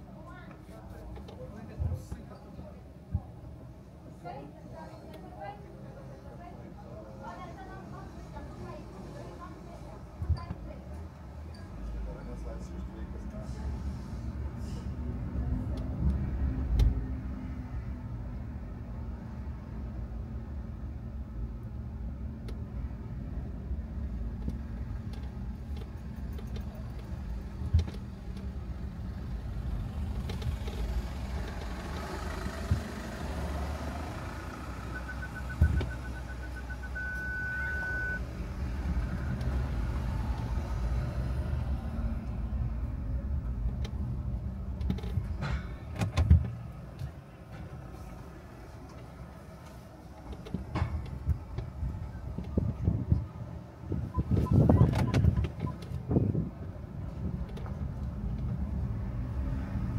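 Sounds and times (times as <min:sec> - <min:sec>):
car engine and road rumble: 0:00.0 - 0:59.9
parking sensor beeping: 0:34.5 - 0:39.8, 0:54.0 - 0:56.3.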